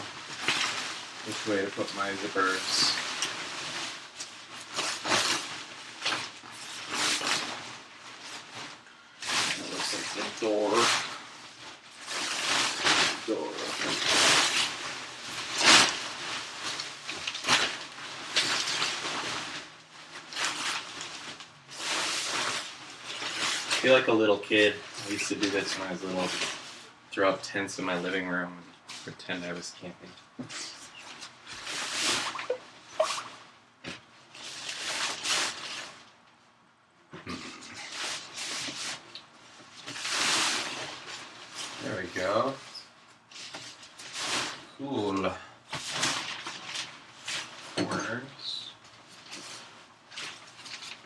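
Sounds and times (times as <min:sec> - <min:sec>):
tent fabric rustling and swishing: 0:00.0 - 0:24.0.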